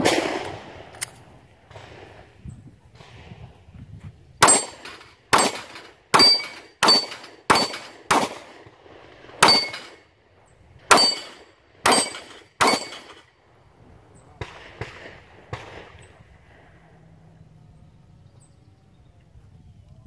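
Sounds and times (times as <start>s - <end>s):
gunshots with ringing tail: 0.0s - 0.9s, 4.4s - 10.1s, 10.8s - 13.3s, 14.2s - 17.1s.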